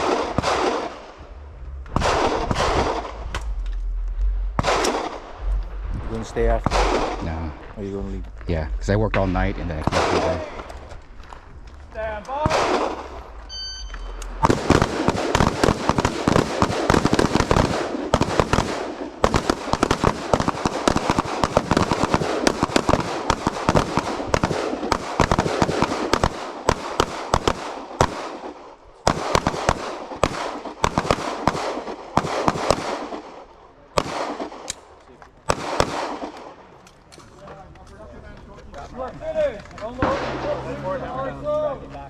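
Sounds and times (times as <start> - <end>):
rapid gunfire: 0.0 - 1.1, 2.0 - 3.3, 4.6 - 5.4, 6.6 - 7.5, 9.8 - 10.6, 12.4 - 13.2, 14.4 - 34.7, 35.5 - 36.5.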